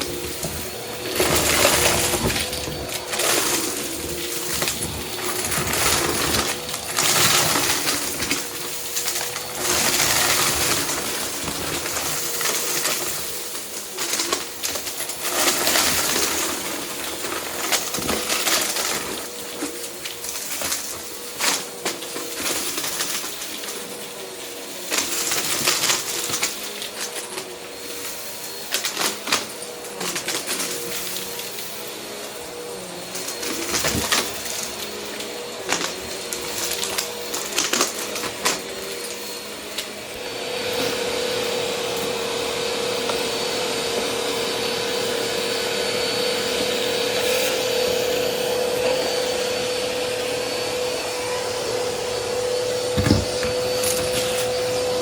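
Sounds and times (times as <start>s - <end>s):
debris clicking and rattling: 0.0s - 23.9s, 28.8s - 31.8s, 33.1s - 40.0s
vacuum cleaner motor whine: 0.0s - 55.0s.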